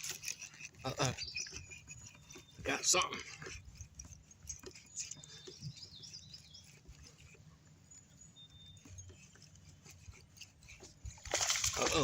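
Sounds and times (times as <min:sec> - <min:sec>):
faint bird chirps: 0:04.9 - 0:10.0.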